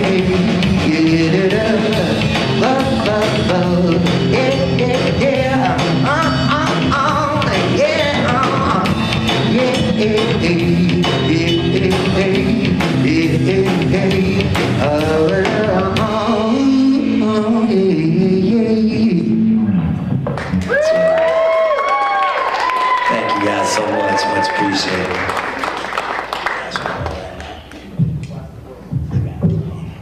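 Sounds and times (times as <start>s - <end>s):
drum kit beat: 0.0s - 16.9s
wordless sung melody: 0.0s - 20.0s
live band playing hip hop: 0.0s - 21.5s.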